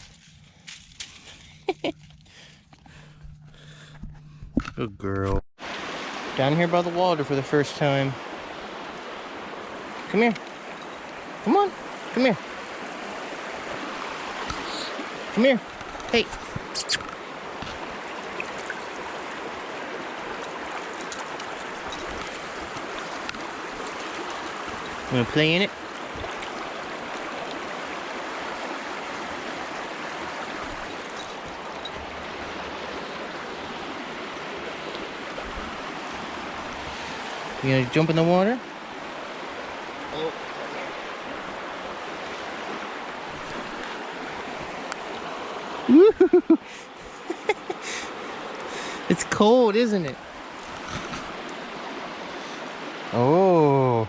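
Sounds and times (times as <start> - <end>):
stream rushing over rocks: 5.6 - 54.0
person whooping: 45.9 - 46.5.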